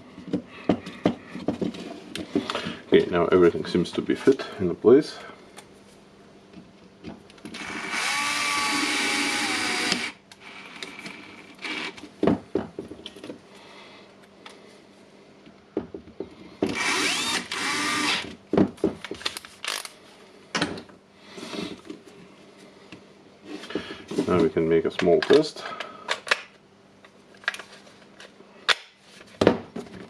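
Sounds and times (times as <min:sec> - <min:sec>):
power drill motor whining: 0:07.6 - 0:12.0, 0:16.8 - 0:18.3.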